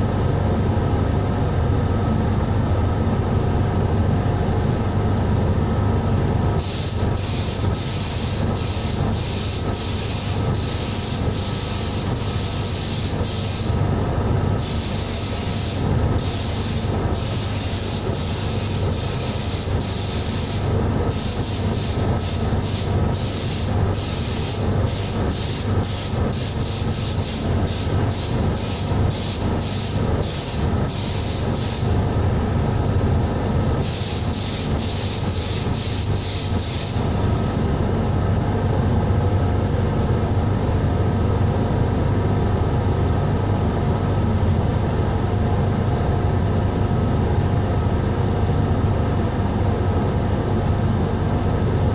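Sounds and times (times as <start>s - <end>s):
low machine hum: 0.0s - 51.9s
air gun hissing: 6.6s - 13.8s, 14.6s - 32.0s, 32.6s - 37.8s.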